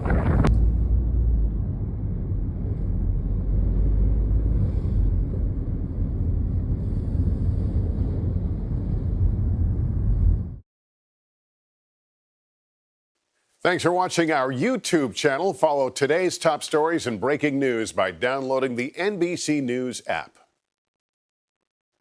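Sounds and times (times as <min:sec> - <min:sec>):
wind buffeting microphone: 0:00.0 - 0:10.6.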